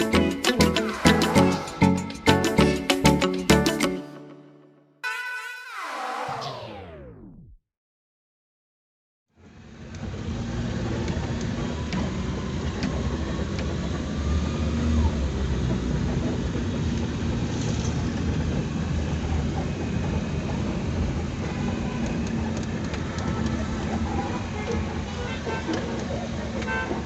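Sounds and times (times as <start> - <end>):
vehicle engine rumbling: 9.4 - 27.0.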